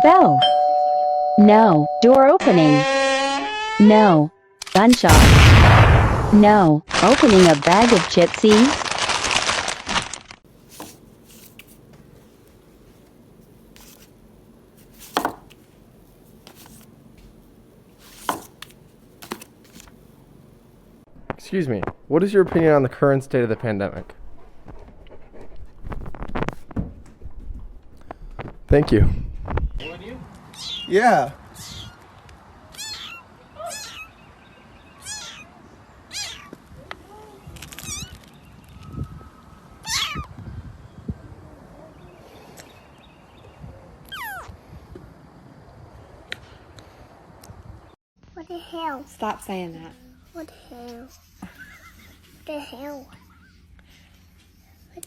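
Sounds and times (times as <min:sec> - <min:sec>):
potato chips crunching: 0:06.9 - 0:10.8
cat meowing: 0:30.6 - 0:30.9, 0:32.7 - 0:34.2, 0:36.1 - 0:36.6, 0:39.8 - 0:40.3.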